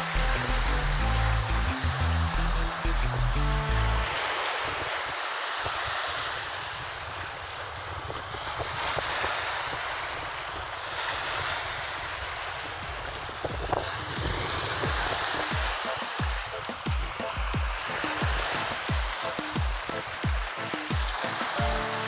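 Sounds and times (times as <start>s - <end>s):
music track: 0.0s - 4.4s, 14.9s - 22.0s
waves washing onto shore: 0.0s - 22.0s
wind buffeting microphone: 5.7s - 19.2s.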